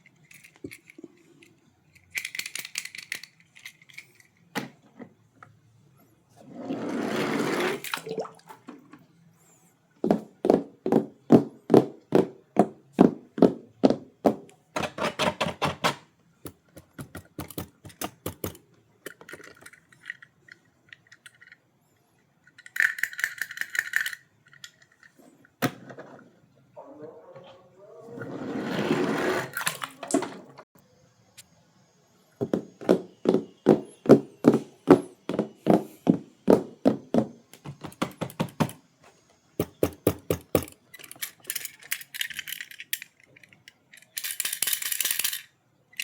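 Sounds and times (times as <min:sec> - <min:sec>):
sharp clicks of toy cars: 0:00.0 - 0:04.5, 0:40.0 - 0:46.0
toy cars rattling: 0:00.0 - 0:04.5, 0:16.5 - 0:21.7, 0:22.4 - 0:26.2, 0:28.8 - 0:30.3, 0:39.6 - 0:46.0
toy packaging rustling: 0:00.0 - 0:04.5, 0:40.4 - 0:46.0.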